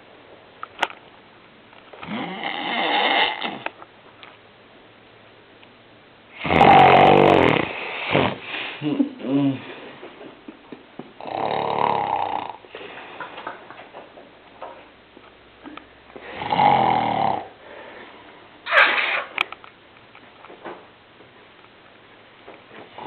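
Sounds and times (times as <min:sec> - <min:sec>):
man snoring: 0:02.0 - 0:03.6, 0:06.4 - 0:08.4, 0:11.2 - 0:12.6, 0:16.3 - 0:17.6
quiet breathing: 0:17.4 - 0:18.6.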